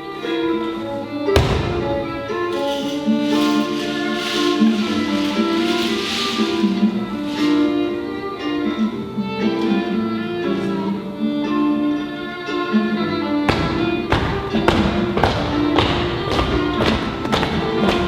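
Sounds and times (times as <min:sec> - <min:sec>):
instrumental music sustained melody: 0:00.0 - 0:18.0
heavy percussive beats: 0:01.4 - 0:08.2.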